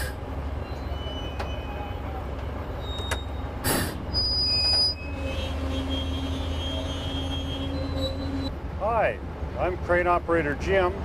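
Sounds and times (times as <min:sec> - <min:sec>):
crane engine rumble: 0:00.0 - 0:11.0
high-pitched metallic squeal: 0:00.6 - 0:08.5.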